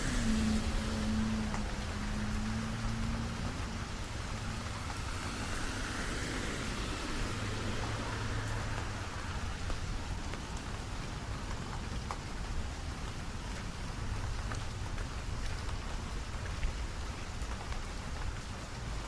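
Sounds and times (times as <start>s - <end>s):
steady rain falling: 0.0s - 19.0s
water drips ticking: 0.0s - 19.0s.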